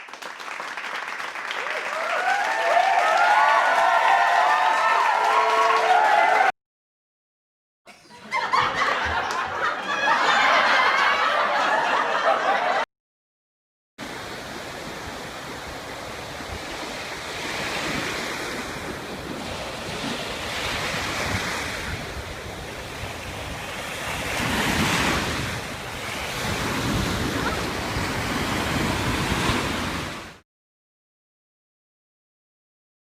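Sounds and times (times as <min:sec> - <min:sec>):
ocean waves washing: 0:14.0 - 0:30.4.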